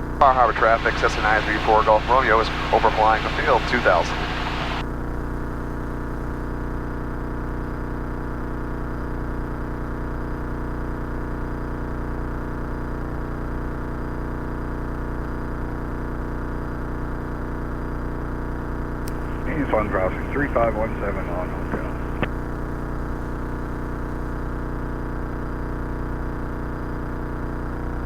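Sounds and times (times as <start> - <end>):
propeller plane engine droning: 0.3 - 4.8, 19.1 - 22.3.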